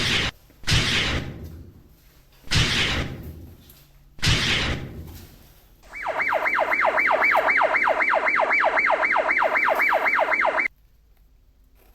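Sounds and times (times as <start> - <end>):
yelping police siren: 5.9 - 10.7.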